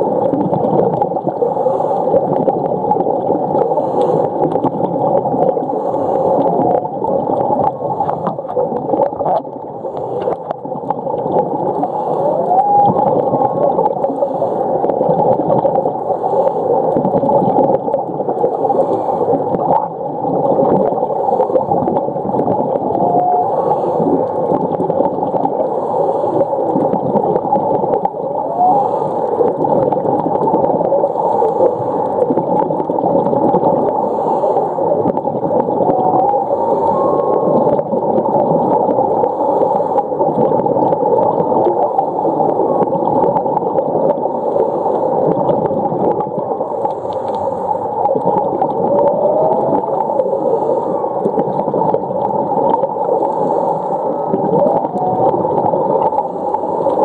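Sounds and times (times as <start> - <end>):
rushing water noise: 0.0 - 57.0
whale calls: 12.0 - 13.9, 22.8 - 24.1, 35.7 - 37.9, 49.0 - 51.2, 54.6 - 55.4.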